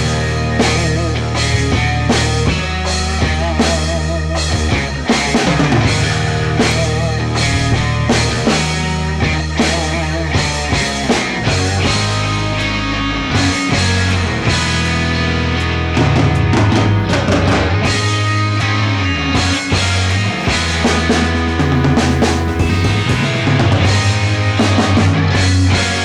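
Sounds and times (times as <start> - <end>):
held bass notes: 0.0 - 25.5
rock music: 0.0 - 26.0
drum kit beat: 20.4 - 24.1.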